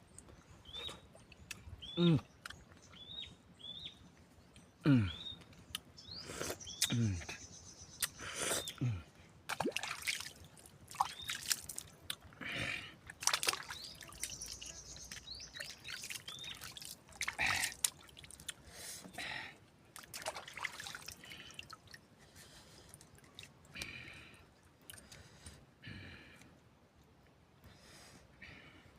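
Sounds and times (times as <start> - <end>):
slurping and sucking mouth sounds: 6.2 - 7.0.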